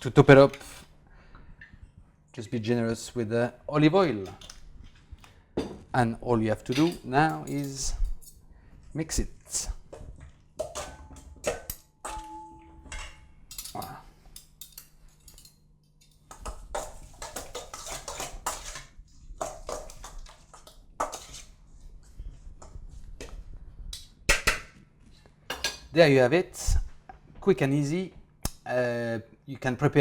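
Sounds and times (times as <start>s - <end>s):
utensil scraping a bowl: 16.3s - 21.7s.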